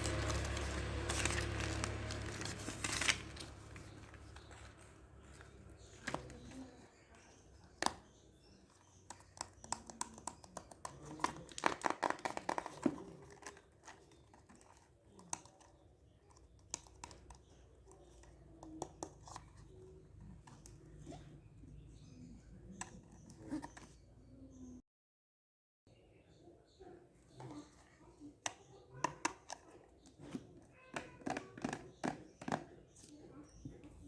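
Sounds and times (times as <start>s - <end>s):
plastic packaging crinkling: 0.0s - 6.5s
small accessories clicking and tapping: 7.7s - 20.8s, 28.4s - 32.7s.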